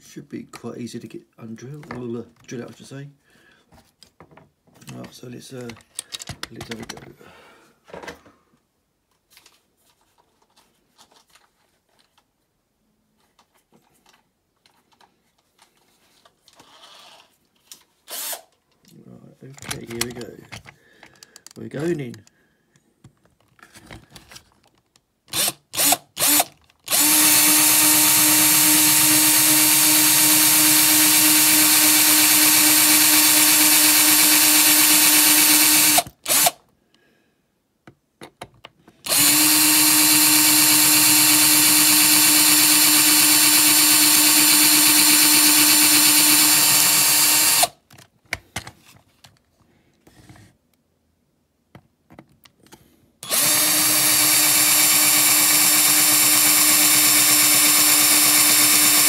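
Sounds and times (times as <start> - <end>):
power drill drilling rivets: 18.1 - 18.6, 19.6 - 22.2, 25.3 - 36.6, 39.0 - 47.9, 53.2 - 59.0.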